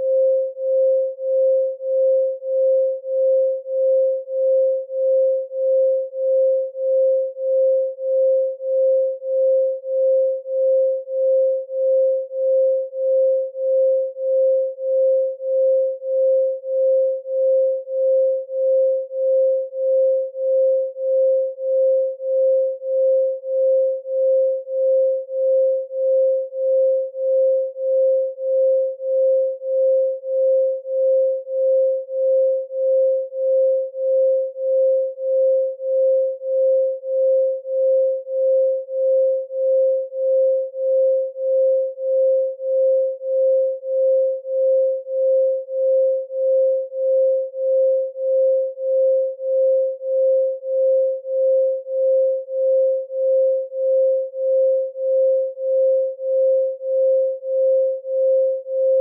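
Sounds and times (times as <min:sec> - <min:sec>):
pulsing sine tone: 0:00.0 - 0:59.0.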